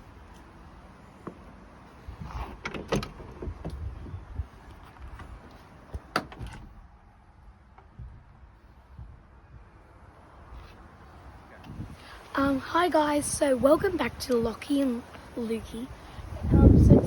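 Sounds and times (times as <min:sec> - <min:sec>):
sharp clicks and clunks: 0:02.3 - 0:03.9, 0:04.7 - 0:06.8.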